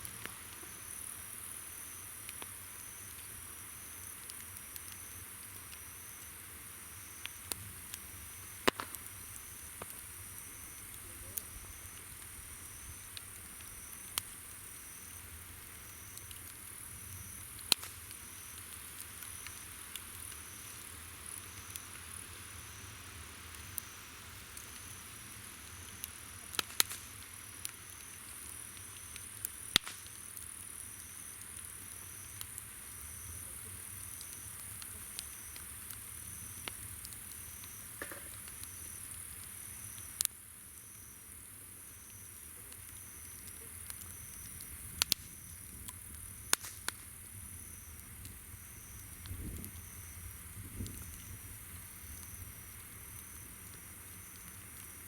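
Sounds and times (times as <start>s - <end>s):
campfire crackling and popping: 0.0s - 55.0s
pulsing insect chirp: 47.2s - 54.7s.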